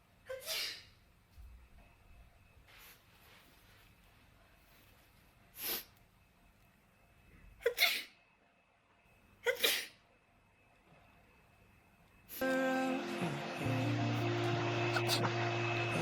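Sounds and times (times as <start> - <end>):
woman sneezing: 0.3 - 0.9, 7.6 - 8.1, 9.4 - 10.0.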